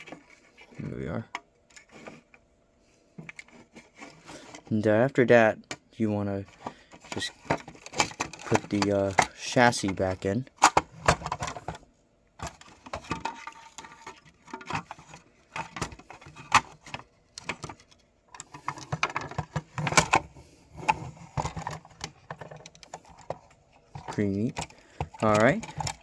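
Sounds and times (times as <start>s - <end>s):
toy train parts clicking and rattling: 21.3s - 26.0s.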